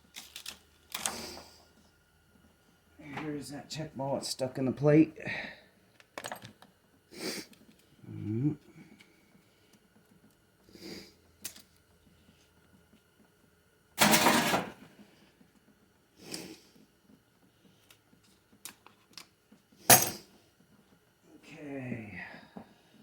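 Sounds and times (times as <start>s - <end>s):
metal parts scraping rattle: 14.0s - 14.8s.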